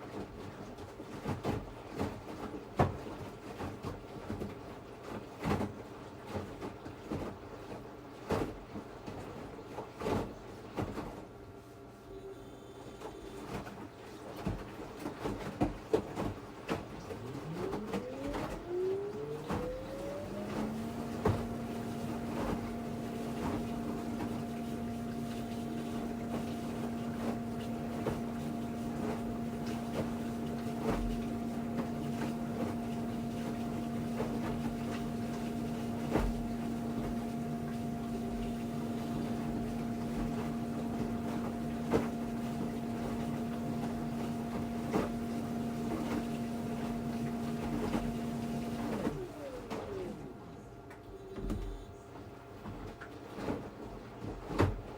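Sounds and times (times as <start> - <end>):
washing machine motor whining: 12.0 - 54.9.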